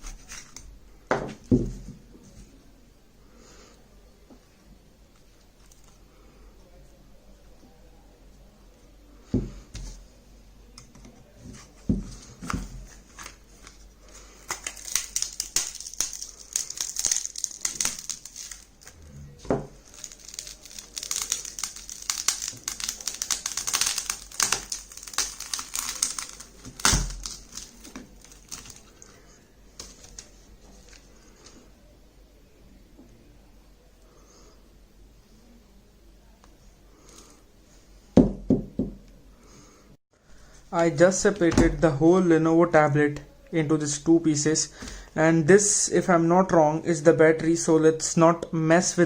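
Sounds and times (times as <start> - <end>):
plastic casing crackling apart: 12.3 - 19.0, 19.7 - 29.2, 29.8 - 31.0.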